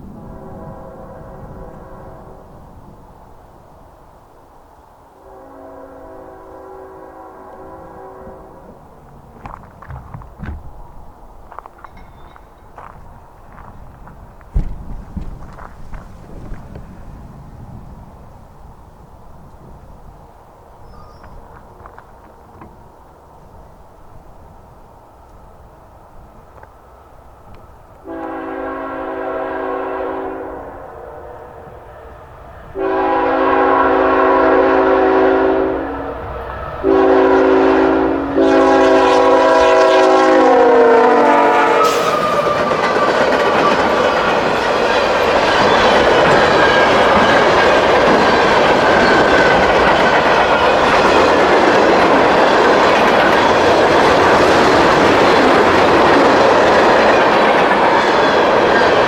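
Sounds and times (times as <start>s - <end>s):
locomotive air horn blasts: 0.2s - 2.4s, 5.2s - 8.7s, 28.0s - 31.6s, 32.8s - 36.2s, 36.8s - 42.8s
freight train wheel clatter: 8.6s - 17.8s, 41.8s - 59.0s.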